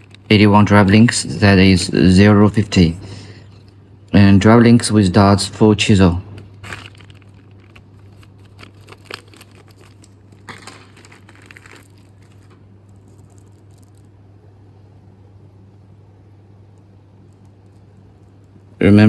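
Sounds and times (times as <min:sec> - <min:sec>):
crinkling and rustling: 0:00.0 - 0:03.8, 0:06.2 - 0:14.2
steady low hum: 0:00.0 - 0:19.0.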